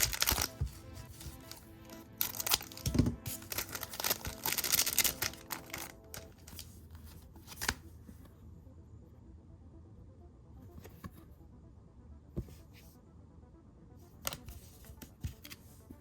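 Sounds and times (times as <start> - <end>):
foil wrapper crinkling and tearing: 0.0 - 0.6, 2.2 - 6.3
faint background music: 0.0 - 16.0.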